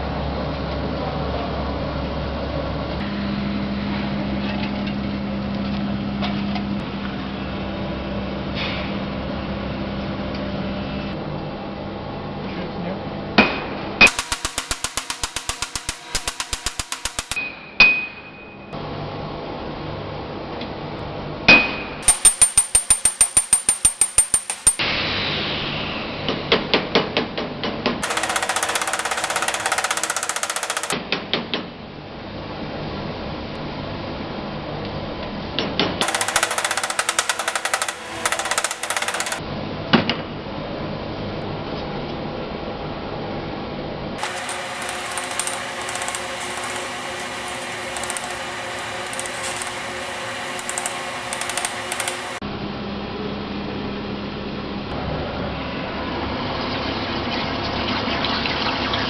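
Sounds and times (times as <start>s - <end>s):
metallic rings: 14.1s - 17.4s, 22.0s - 24.8s.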